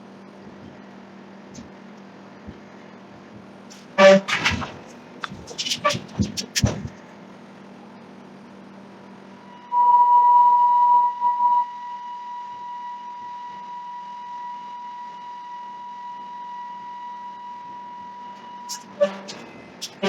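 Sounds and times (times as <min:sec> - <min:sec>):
low steady hum: 0:00.0 - 0:20.0
high steady beep tone: 0:09.6 - 0:12.6.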